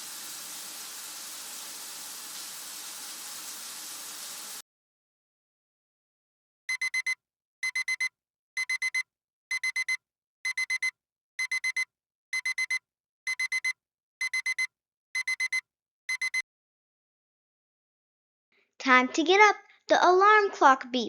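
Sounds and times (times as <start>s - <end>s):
digital alarm clock beeping: 6.7s - 16.4s.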